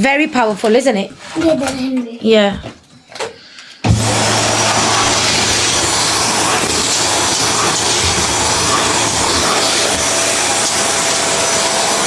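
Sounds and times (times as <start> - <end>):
vacuum cleaner running: 3.8 - 12.0.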